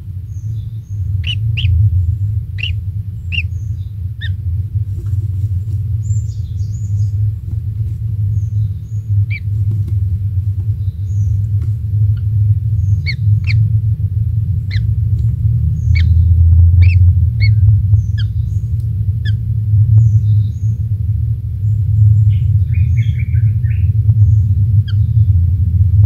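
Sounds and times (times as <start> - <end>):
low rumble: 0.0 - 26.0
bird chirping: 0.3 - 4.4, 6.0 - 7.3, 8.2 - 9.6, 10.7 - 11.5, 12.1 - 13.7, 14.5 - 14.9, 15.7 - 19.4, 22.2 - 25.3.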